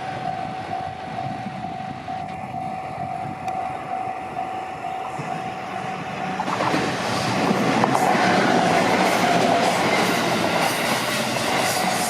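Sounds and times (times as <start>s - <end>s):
level crossing warning bell: 0.0s - 6.3s.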